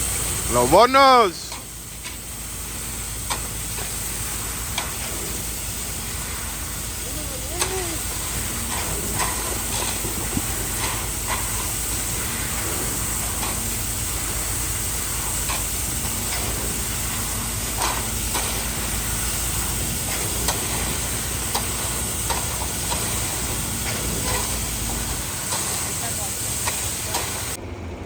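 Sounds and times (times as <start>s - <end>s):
hissing noise: 0.0s - 27.6s
machine engine humming: 0.0s - 28.0s.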